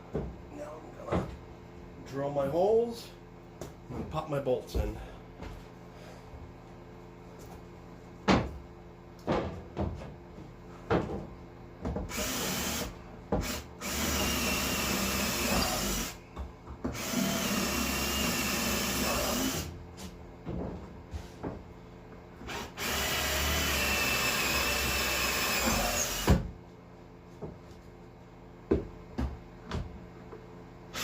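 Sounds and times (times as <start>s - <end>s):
power drill whining: 12.1s - 16.2s, 17.0s - 19.7s, 22.5s - 26.3s.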